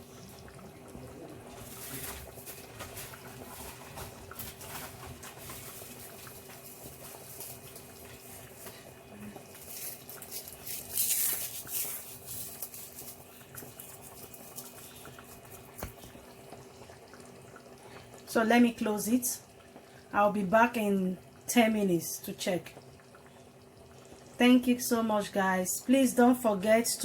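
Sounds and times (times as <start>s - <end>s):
soup simmering with pops: 0.0s - 10.6s, 11.4s - 25.1s
faint steady hum: 11.7s - 27.0s.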